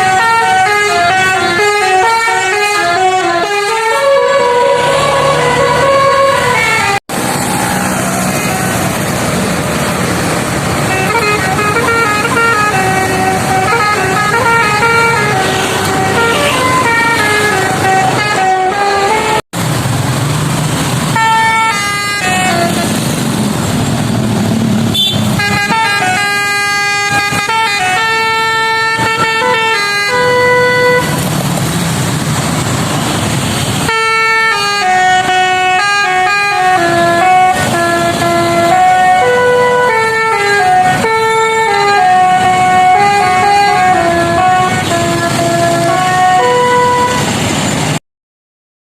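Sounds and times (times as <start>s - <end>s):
bus air horn playing a tune: 0.0s - 7.0s, 10.8s - 19.4s, 21.1s - 23.1s, 24.9s - 31.3s, 33.8s - 47.4s.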